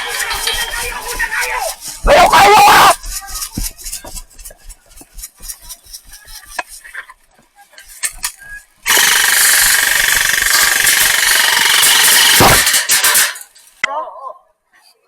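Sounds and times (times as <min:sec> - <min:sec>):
airsoft gun full-auto burst: 0:08.9 - 0:13.4
sharp clicks: 0:08.9 - 0:13.5.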